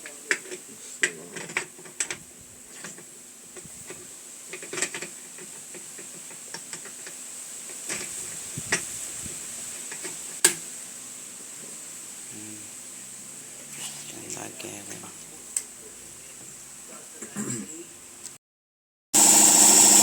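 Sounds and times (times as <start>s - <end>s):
faint high hiss: 2.2s - 18.0s.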